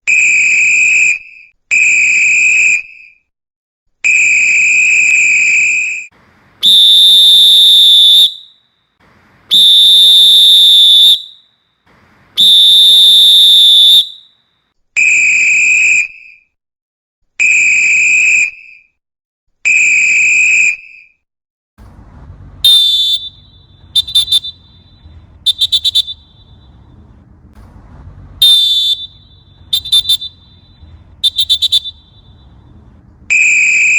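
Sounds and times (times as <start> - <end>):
referee's whistle blasts: 6.6 - 8.6, 9.5 - 11.4, 12.4 - 14.3, 21.8 - 33.9
low background rumble: 21.8 - 33.9.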